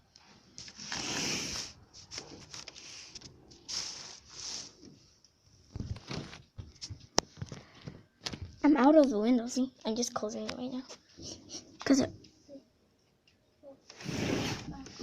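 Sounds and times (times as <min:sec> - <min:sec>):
rustling handling noise: 0:00.1 - 0:08.6.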